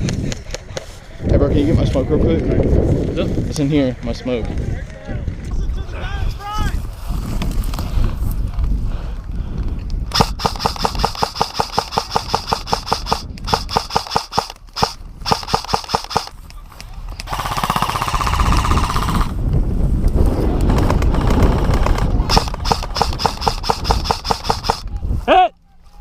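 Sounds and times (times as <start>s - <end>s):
airsoft rifle full-auto bursts: 10.1s - 16.3s, 17.3s - 19.4s, 21.1s - 24.8s
steady buzzing: 10.1s - 16.3s, 21.3s - 24.8s.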